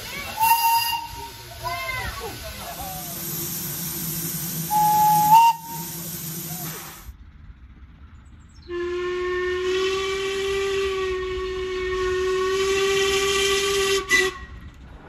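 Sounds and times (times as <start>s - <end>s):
steam hissing: 0.0s - 7.1s
steam locomotive whistle: 0.4s - 1.4s, 4.4s - 6.8s, 8.7s - 14.7s
low rumble: 14.3s - 15.0s.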